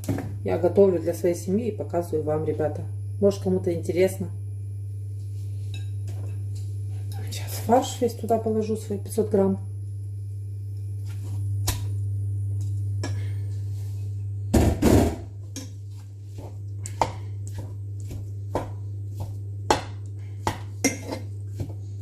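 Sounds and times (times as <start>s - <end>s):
steady low hum: 0.0s - 22.0s
kitchen utensils knocking and scraping: 19.7s - 21.3s.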